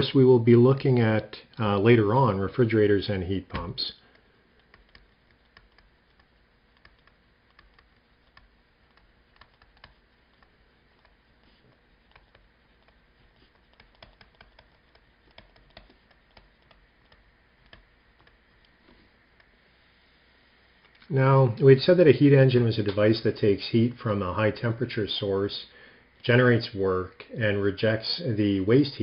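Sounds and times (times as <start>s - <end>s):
light clicks and taps: 3.5s - 19.5s.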